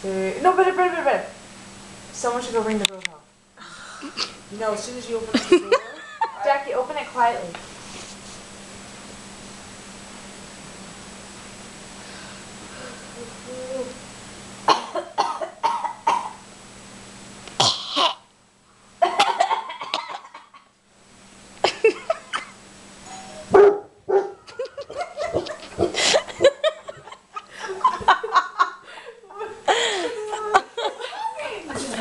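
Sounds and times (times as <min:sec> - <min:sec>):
doorbell ringing: 0:23.0 - 0:23.4
dog barking: 0:23.5 - 0:24.5.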